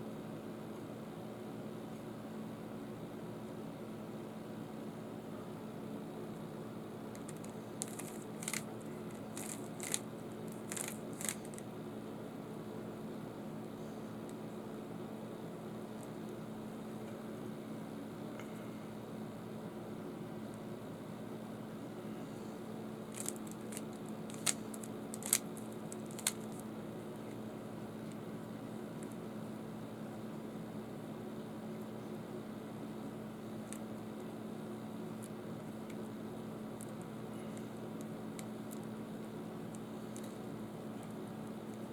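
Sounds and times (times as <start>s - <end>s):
steady low hum: 0.0s - 41.9s
puzzle cube clicking: 7.2s - 11.6s, 23.1s - 26.6s.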